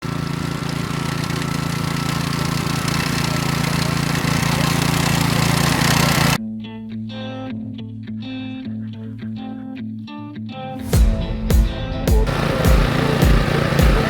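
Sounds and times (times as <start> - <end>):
machine engine running: 0.0 - 6.4, 12.2 - 14.0
guitar music: 6.4 - 14.0.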